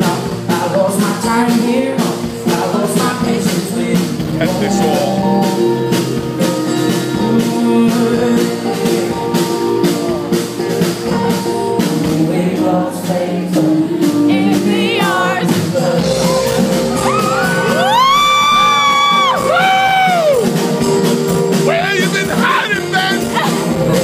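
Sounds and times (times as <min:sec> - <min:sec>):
person singing: 0:00.0 - 0:06.0, 0:06.9 - 0:18.1
live band music: 0:00.0 - 0:24.0.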